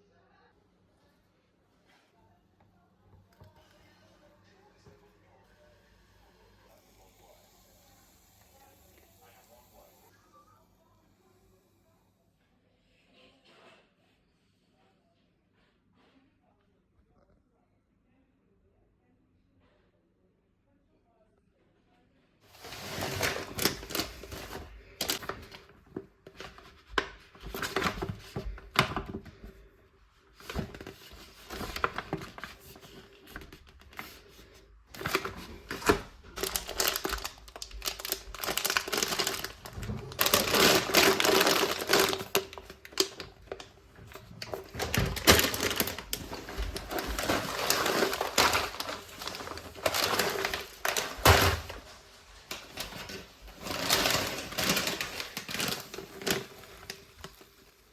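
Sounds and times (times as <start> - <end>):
packaging rustling and crinkling: 22.5 - 29.7, 30.3 - 57.9.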